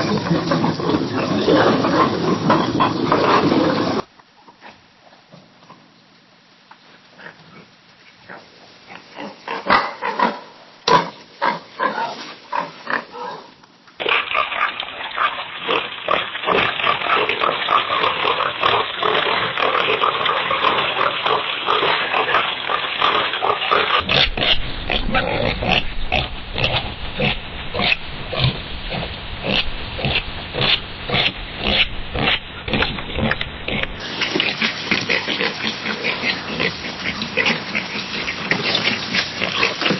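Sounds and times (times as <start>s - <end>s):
pigs oinking: 0.0s - 5.8s, 7.1s - 39.9s
low hum: 24.0s - 34.4s.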